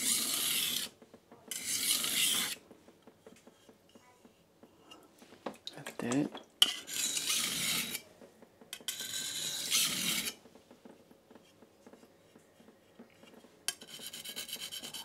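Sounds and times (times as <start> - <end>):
knife scraping on whetstone: 0.0 - 2.6, 6.6 - 8.1, 8.8 - 10.4, 12.6 - 15.0.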